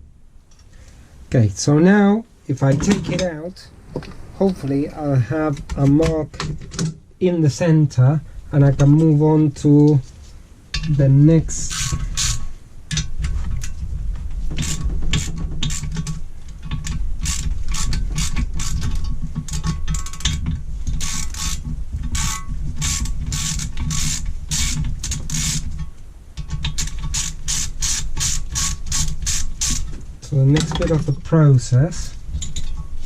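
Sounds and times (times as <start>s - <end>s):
ratchet wrench clicking: 11.7s - 12.4s, 16.8s - 25.7s, 26.6s - 29.9s.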